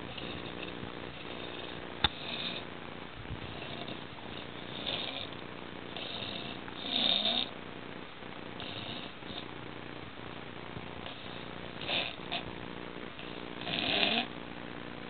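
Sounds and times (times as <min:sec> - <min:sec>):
man snoring loudly: 0:04.6 - 0:07.5, 0:11.8 - 0:12.4, 0:13.6 - 0:14.3.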